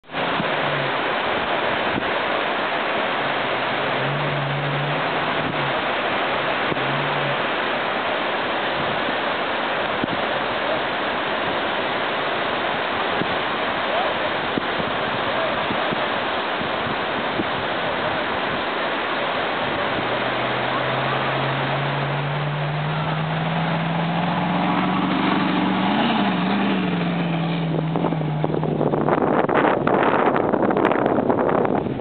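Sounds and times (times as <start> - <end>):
wind noise on microphone: 0.0 - 2.2, 3.3 - 5.9, 8.7 - 10.5, 13.0 - 18.8, 19.6 - 32.0
off-road vehicle driving: 0.0 - 9.3, 12.6 - 32.0
engine revving: 3.3 - 7.6, 19.6 - 30.2.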